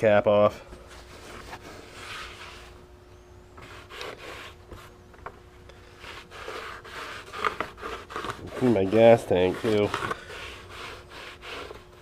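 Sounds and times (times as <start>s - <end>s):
towel rubbing a cap: 3.6s - 5.0s, 5.9s - 12.0s.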